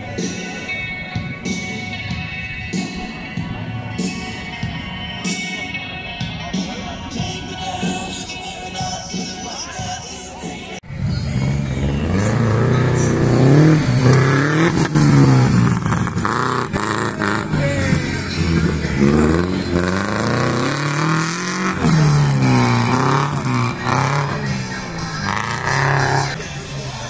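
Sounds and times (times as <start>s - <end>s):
vehicle engine revving hard: 10.9s - 26.4s.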